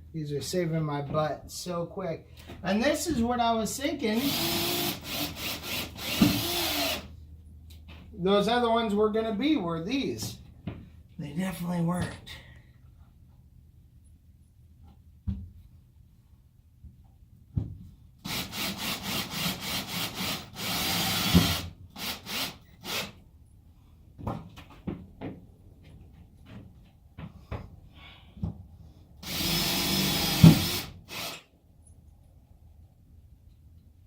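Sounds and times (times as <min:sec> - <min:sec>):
cordless drill driving screws: 0:04.2 - 0:07.1, 0:18.2 - 0:23.2, 0:29.2 - 0:31.5.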